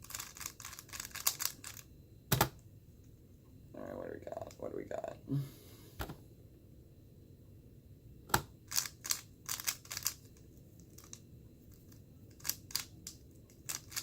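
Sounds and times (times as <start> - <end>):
puzzle cube turning clicks: 0.0 - 2.6, 8.3 - 11.2, 11.8 - 14.0.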